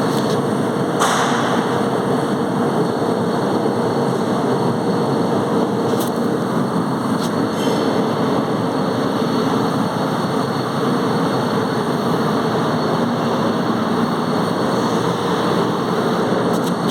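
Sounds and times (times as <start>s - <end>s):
welding arc sizzling: 12.4s - 16.9s.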